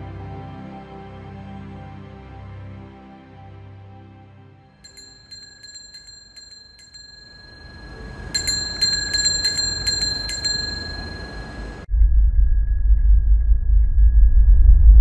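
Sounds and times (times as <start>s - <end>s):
bell-like metallic pings: 4.8s - 11.9s.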